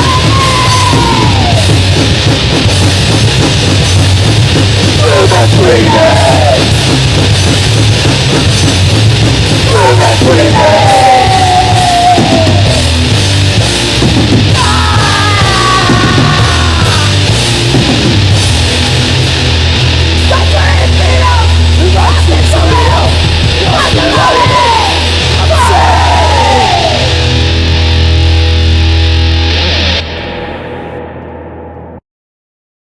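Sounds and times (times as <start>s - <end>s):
harsh screamed vocals: 0.0s - 1.9s, 5.0s - 6.8s, 9.6s - 13.2s, 14.5s - 17.5s, 20.3s - 27.4s
drums: 0.0s - 31.7s
distorted bass: 0.0s - 32.0s
distorted guitars: 0.0s - 32.0s.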